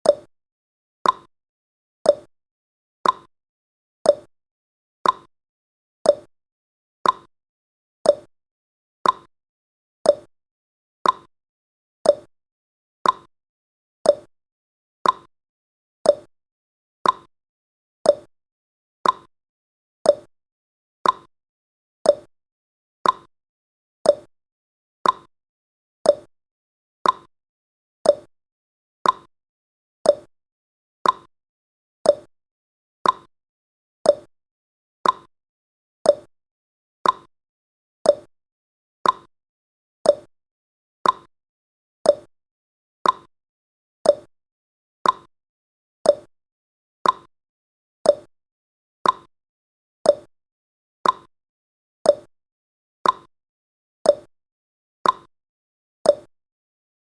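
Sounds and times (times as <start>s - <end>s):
clock ticking: 33.0s - 33.3s, 35.0s - 35.3s, 39.0s - 39.3s, 41.0s - 41.3s, 43.0s - 43.3s, 45.0s - 45.3s, 47.0s - 47.3s, 49.0s - 49.3s, 51.0s - 51.3s.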